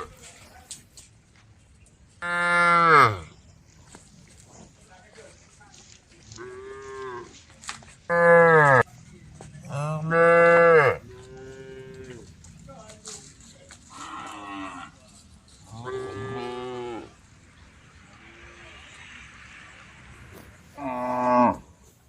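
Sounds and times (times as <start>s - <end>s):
cows mooing: 2.2s - 3.3s, 8.1s - 8.8s, 9.7s - 12.3s, 15.7s - 17.2s, 20.8s - 21.7s.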